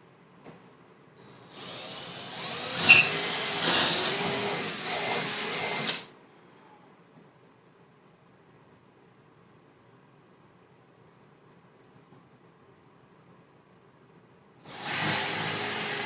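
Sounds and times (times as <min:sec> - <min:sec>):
power drill boring into wood: 0:01.6 - 0:06.1, 0:14.7 - 0:16.0.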